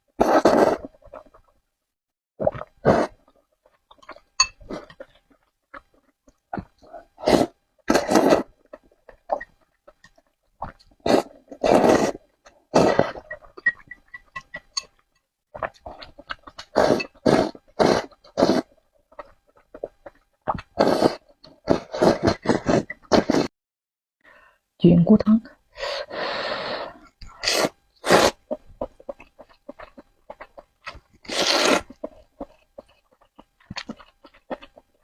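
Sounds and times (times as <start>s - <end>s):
slurping noodles: 0.2s - 1.4s, 2.4s - 3.3s, 6.6s - 9.5s, 10.6s - 13.4s, 15.6s - 23.5s, 26.0s - 34.8s
chewing: 2.4s - 7.1s, 12.8s - 23.2s, 28.3s - 35.0s.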